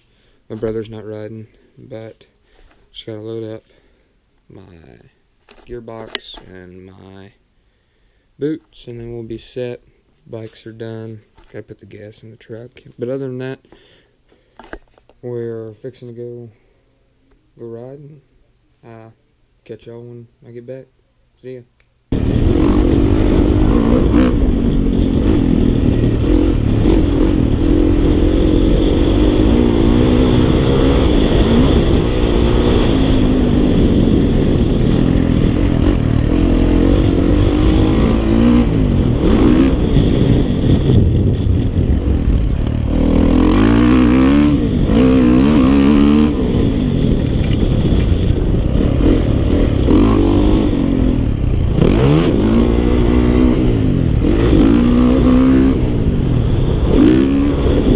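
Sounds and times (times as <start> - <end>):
dirt bike engine revving: 22.1 - 57.9.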